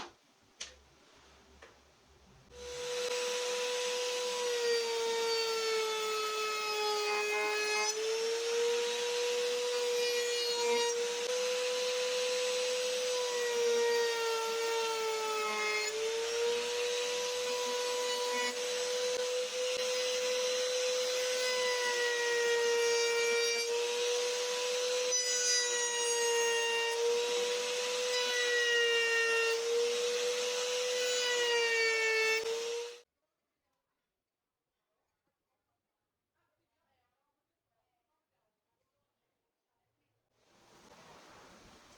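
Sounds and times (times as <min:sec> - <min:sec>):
power tool whining: 0:02.5 - 0:06.4, 0:07.9 - 0:33.0
scraping hiss: 0:40.6 - 0:41.9.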